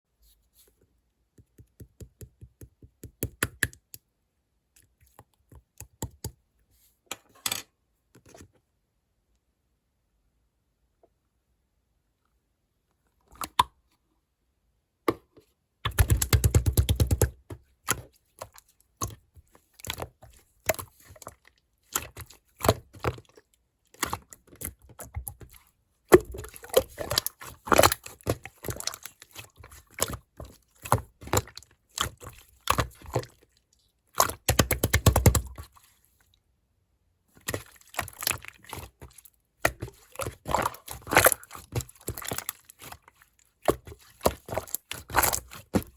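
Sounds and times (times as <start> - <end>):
slime squishing with sticky clicks: 1.2 - 6.5, 15.9 - 35.8, 37.4 - 45.9.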